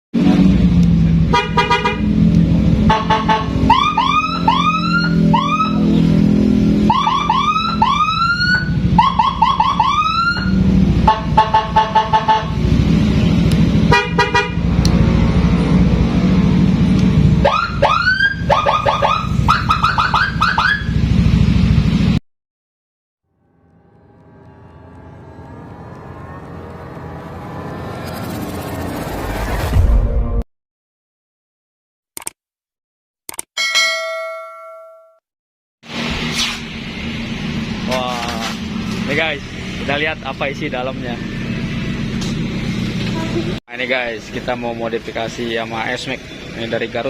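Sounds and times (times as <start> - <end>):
scooter siren whoops and blasts: 3.0 - 6.0, 6.8 - 12.5, 17.4 - 21.0.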